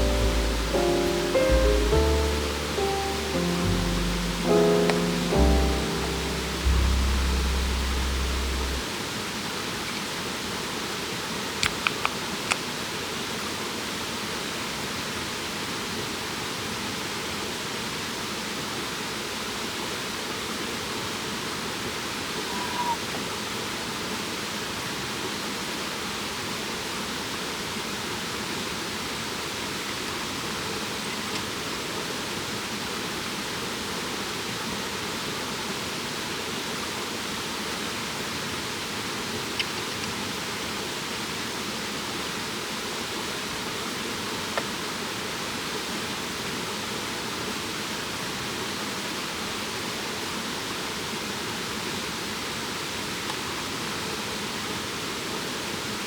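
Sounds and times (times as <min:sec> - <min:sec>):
brief high note: 0:00.0 - 0:08.8.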